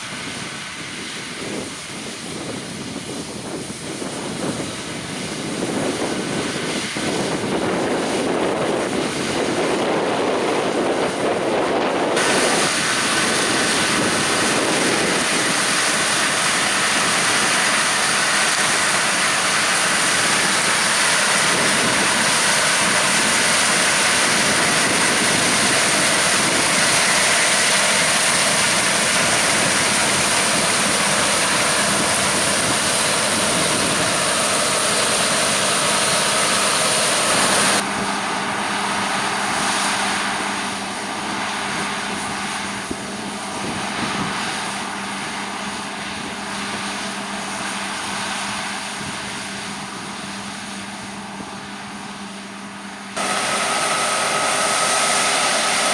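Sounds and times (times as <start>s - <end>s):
harvest machinery working: 3.4s - 55.9s.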